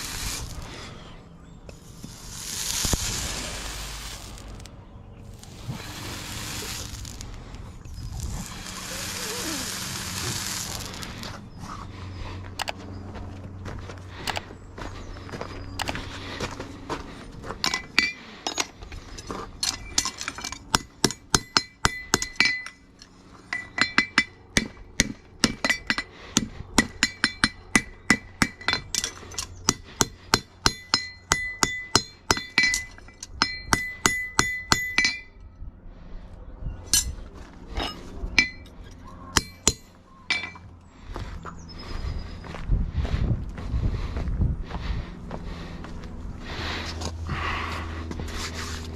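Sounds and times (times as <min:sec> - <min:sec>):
hammer striking steel: 0:19.9 - 0:22.8, 0:26.8 - 0:35.4, 0:37.8 - 0:38.8, 0:39.4 - 0:40.7.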